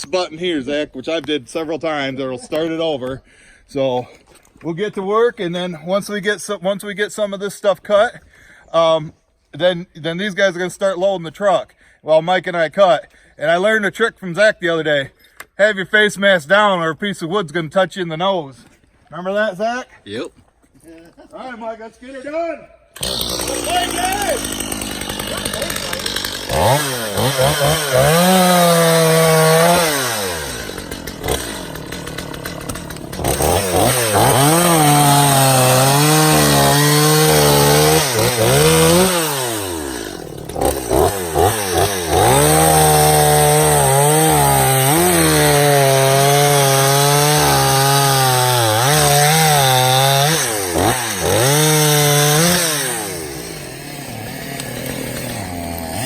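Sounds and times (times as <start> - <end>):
chainsaw cutting wood: 22.9 - 56.0.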